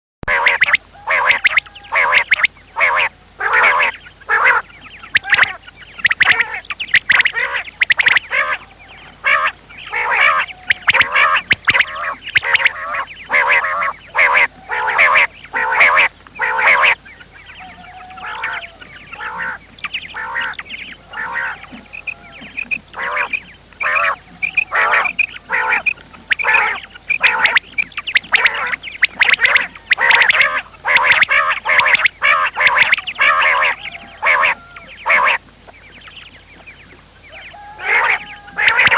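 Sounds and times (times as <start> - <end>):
birds harsh calls: 0.2 - 38.9.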